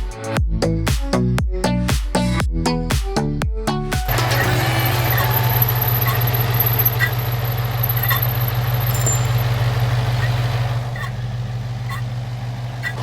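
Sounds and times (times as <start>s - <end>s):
car engine idling: 4.1s - 13.0s
short high chirp: 4.3s - 10.3s.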